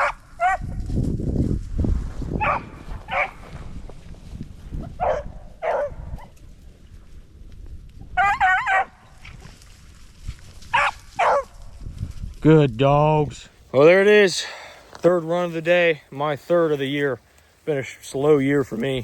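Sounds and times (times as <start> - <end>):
wind rumble on microphone: 0.0 - 13.4
dogs baying: 2.4 - 3.4, 5.0 - 6.3, 8.2 - 9.0, 10.7 - 11.5.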